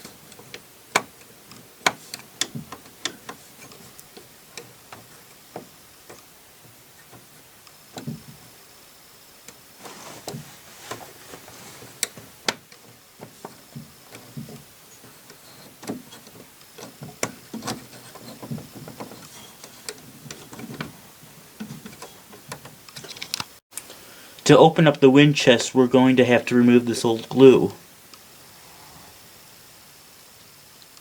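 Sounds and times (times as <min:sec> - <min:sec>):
wooden parts clicking and knocking: 0:12.0 - 0:23.6.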